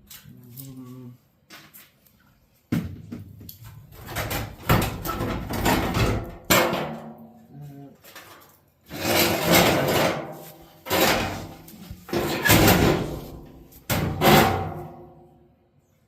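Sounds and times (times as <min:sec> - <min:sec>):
bangs on sheet-metal cabinet: 0:04.1 - 0:07.2, 0:12.1 - 0:13.2, 0:13.9 - 0:15.3.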